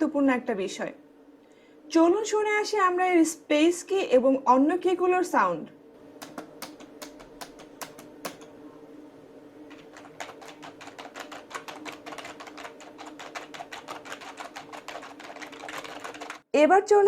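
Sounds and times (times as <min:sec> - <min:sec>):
faint steady hum: 0:00.0 - 0:17.0
keyboard typing: 0:06.2 - 0:08.5, 0:09.7 - 0:16.4.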